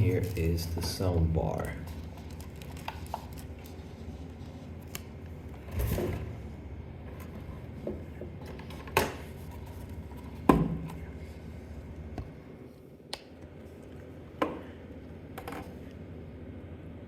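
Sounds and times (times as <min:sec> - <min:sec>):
packaging rustling: 0:00.0 - 0:05.2.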